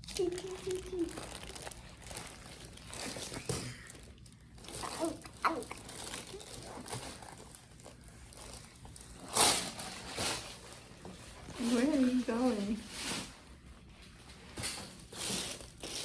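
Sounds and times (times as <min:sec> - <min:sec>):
rustling and crinkling: 0:00.0 - 0:16.0
toddler vocal sounds: 0:04.7 - 0:07.0.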